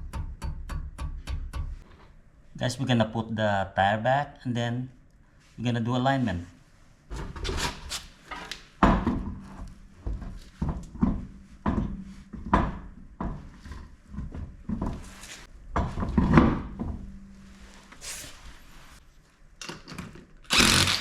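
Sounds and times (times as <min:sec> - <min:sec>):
faint steady hum: 0:08.8 - 0:19.6.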